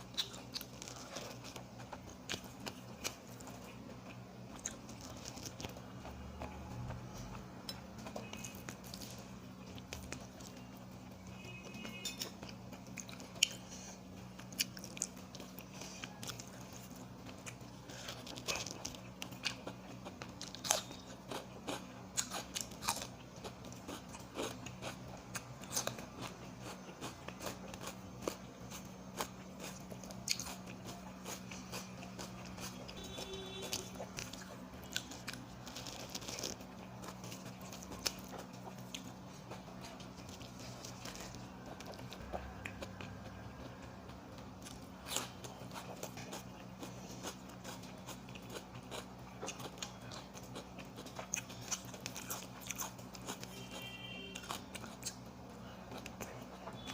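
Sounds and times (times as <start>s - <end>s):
person chewing and crunching: 0.0s - 56.9s
steady low hum: 0.0s - 56.9s.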